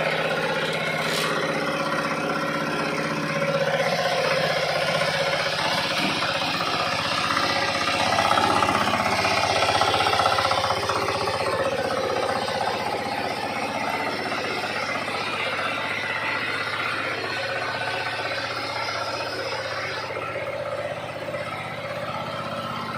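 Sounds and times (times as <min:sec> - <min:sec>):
harvester engine running: 0:00.0 - 0:22.9.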